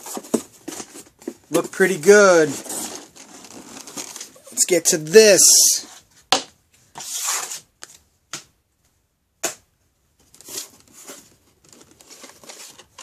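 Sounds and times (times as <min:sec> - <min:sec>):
card and plastic crinkling: 0:00.0 - 0:04.4, 0:10.2 - 0:13.0
cardboard sliding rustle: 0:02.4 - 0:04.3, 0:10.4 - 0:13.0.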